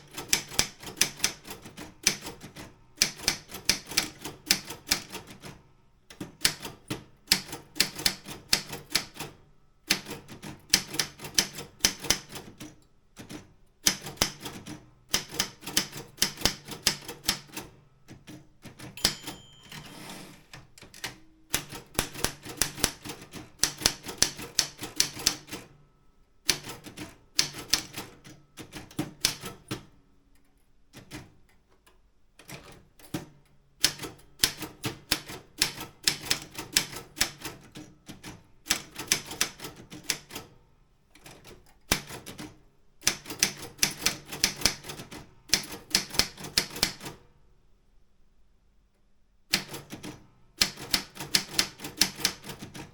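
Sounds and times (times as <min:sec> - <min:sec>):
manual typewriter key strikes: 0:09.9 - 0:20.0, 0:20.8 - 0:25.7, 0:26.5 - 0:29.9, 0:41.3 - 0:47.2, 0:49.5 - 0:52.9.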